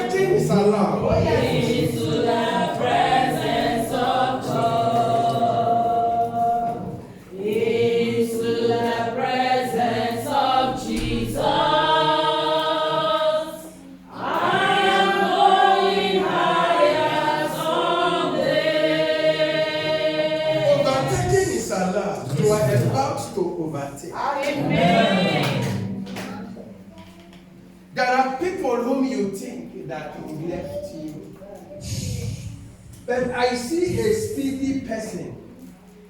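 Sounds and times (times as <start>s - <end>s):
choir singing: 0.0s - 21.8s, 24.4s - 26.2s.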